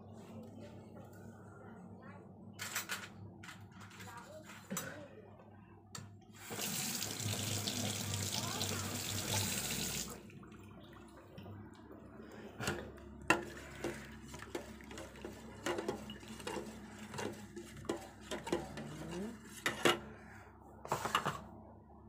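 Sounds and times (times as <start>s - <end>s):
kitchen tap running: 6.4s - 10.7s.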